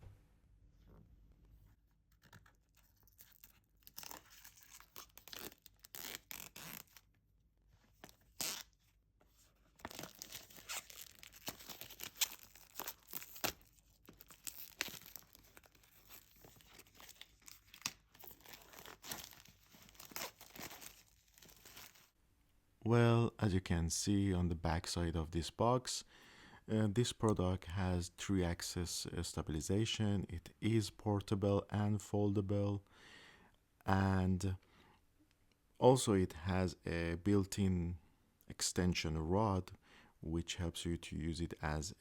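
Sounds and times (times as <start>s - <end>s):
plastic packaging tearing and crinkling: 2.1s - 7.0s, 9.8s - 22.1s.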